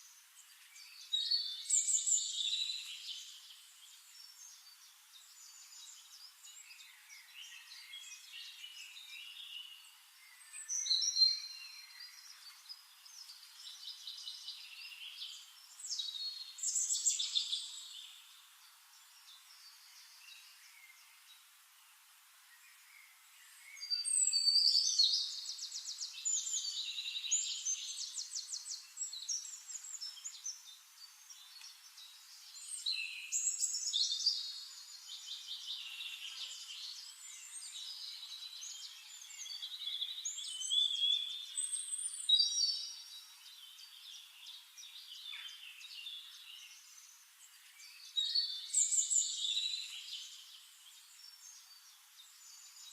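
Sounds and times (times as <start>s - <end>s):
faint background hiss: 0.0s - 52.9s
songbirds chirping and trilling: 0.0s - 52.9s.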